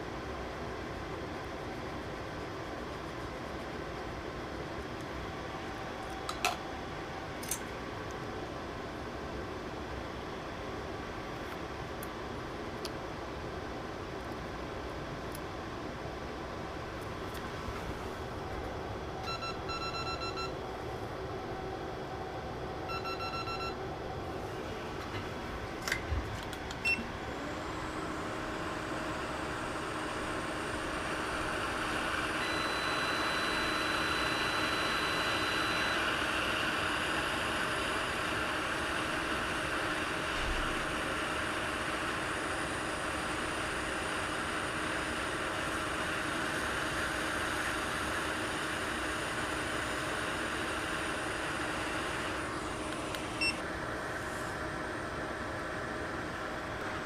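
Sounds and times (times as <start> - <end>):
short electronic beeps: 19.2 - 20.5, 22.9 - 23.8, 32.4 - 36.0
hot air station blowing: 26.6 - 56.8.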